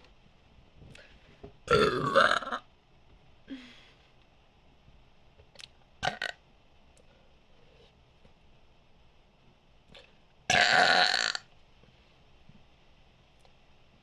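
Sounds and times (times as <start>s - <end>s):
person burping: 1.7s - 2.6s, 6.0s - 6.3s, 10.5s - 11.4s.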